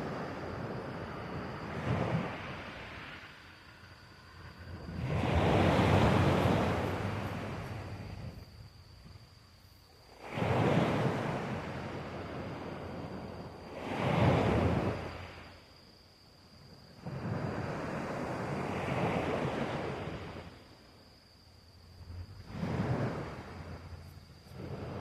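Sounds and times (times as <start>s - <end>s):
wind on microphone: 0.0s - 9.2s, 22.2s - 25.0s
surf rushing: 4.4s - 8.4s.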